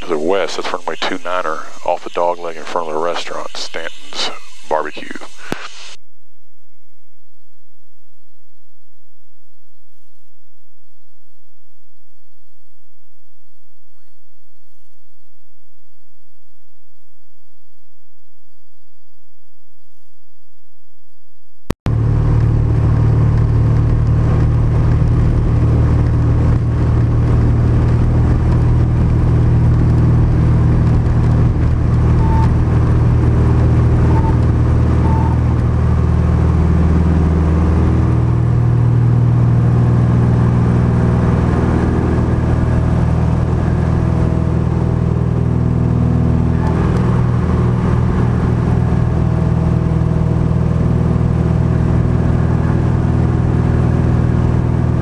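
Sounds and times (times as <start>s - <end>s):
piston aircraft engine and propeller: 21.9s - 55.0s.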